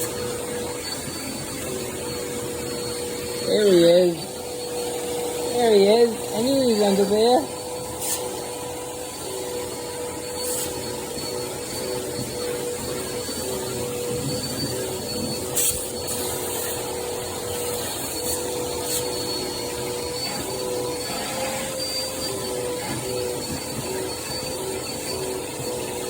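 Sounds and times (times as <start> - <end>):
vacuum cleaner whining: 0.0 - 26.0.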